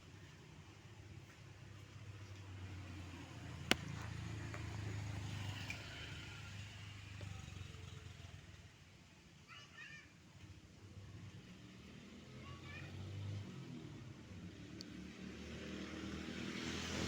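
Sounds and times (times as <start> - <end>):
motor vehicle passing: 2.1 - 8.5, 10.9 - 17.0.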